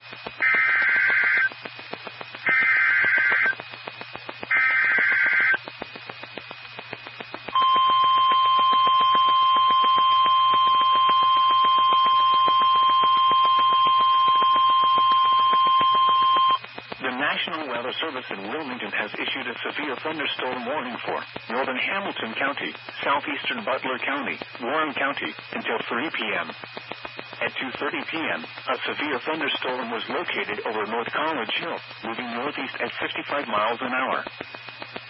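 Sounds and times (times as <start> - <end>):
short buzzing data bursts: 0.0 - 17.1
radio static clicks: 0.0 - 35.0
steady warning alarm tone: 0.2 - 1.6, 2.3 - 3.6, 4.3 - 5.6, 7.5 - 16.7.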